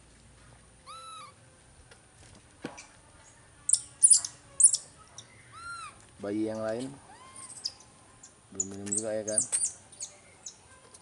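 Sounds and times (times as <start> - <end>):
baby monkey high squeaks: 0.8 - 1.4, 3.7 - 6.0, 7.1 - 7.8, 8.9 - 9.8
baby monkey whistling coo: 0.9 - 1.4, 5.5 - 6.0, 7.1 - 7.8.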